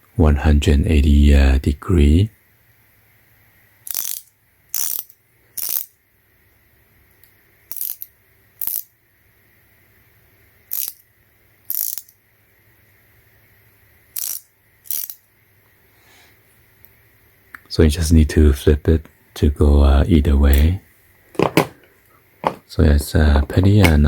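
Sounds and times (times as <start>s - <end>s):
ratchet wrench clicking: 3.8s - 6.0s, 7.7s - 8.9s, 10.7s - 11.0s, 11.7s - 12.2s, 14.2s - 15.2s.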